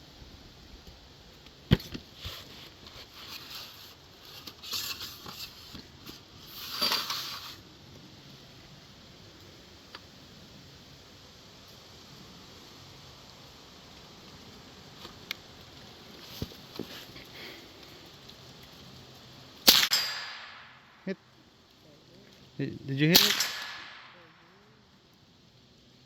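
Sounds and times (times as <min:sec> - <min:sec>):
scraping noises: 0:01.8 - 0:07.6
rifle shot: 0:19.6 - 0:21.0, 0:23.1 - 0:24.4.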